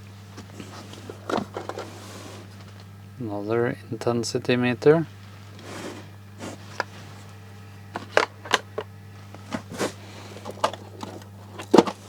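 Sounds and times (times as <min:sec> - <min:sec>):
steady low hum: 0:00.0 - 0:12.0
electronic parts clicking and knocking: 0:07.9 - 0:08.9, 0:10.4 - 0:12.0.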